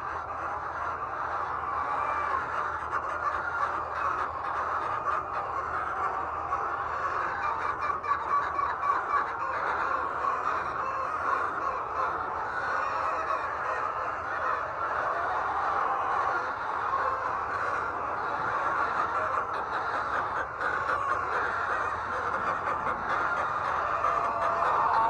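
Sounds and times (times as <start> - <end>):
hens clucking and squawking: 0.0 - 25.0.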